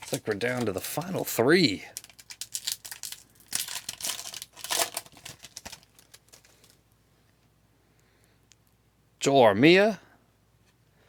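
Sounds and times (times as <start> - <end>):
wrapper tearing and crinkling: 0.0 - 6.8.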